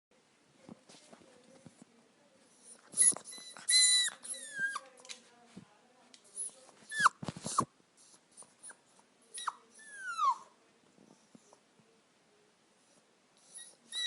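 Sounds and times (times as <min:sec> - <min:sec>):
puppy whimpering: 0:02.7 - 0:04.9, 0:06.4 - 0:07.7, 0:09.4 - 0:10.5, 0:13.5 - 0:14.0.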